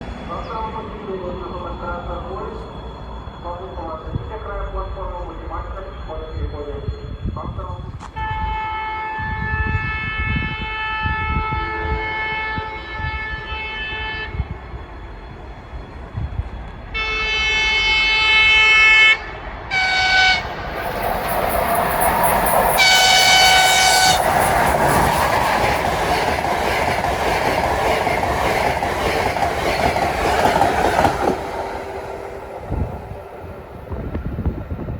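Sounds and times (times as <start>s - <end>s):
locomotive horn blasts: 8.1s - 14.4s, 17.0s - 21.4s, 22.2s - 24.5s
train rushing past: 19.4s - 34.9s.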